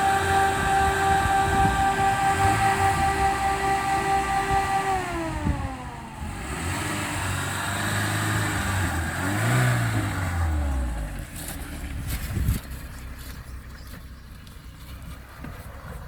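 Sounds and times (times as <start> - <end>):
high whine sliding down: 0.0 - 6.8
car engine revving: 0.0 - 13.4.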